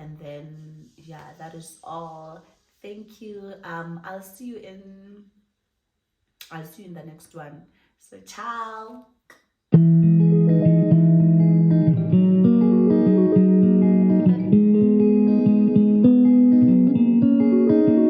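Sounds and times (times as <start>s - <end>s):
guitar music: 9.7s - 18.0s.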